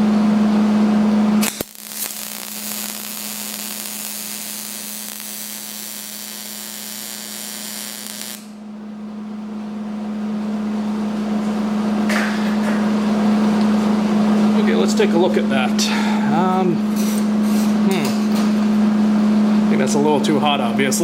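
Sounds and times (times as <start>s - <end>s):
machine hum: 0.0s - 12.1s
welding arc crack: 1.4s - 8.6s
welding arc hissing: 1.4s - 8.6s.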